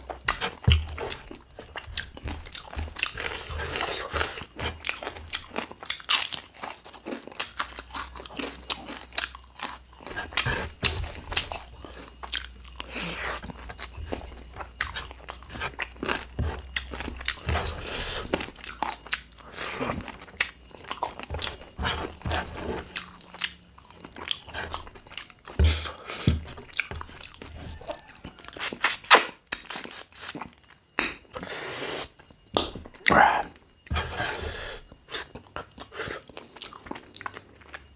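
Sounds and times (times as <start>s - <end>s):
biting and chewing: 0.0s - 31.5s, 32.2s - 37.9s.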